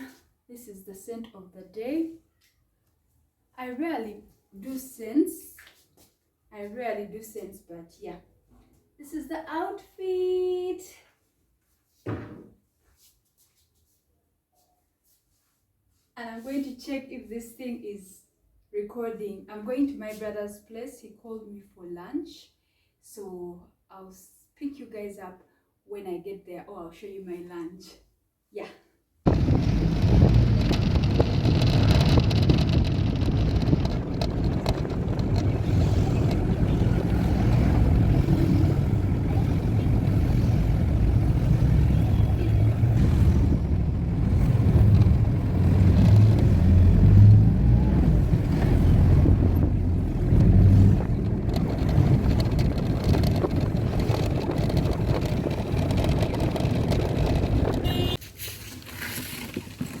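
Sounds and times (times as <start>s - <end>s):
moving vehicle rumble: 29.3s - 58.2s
wind buffeting microphone: 29.3s - 58.2s.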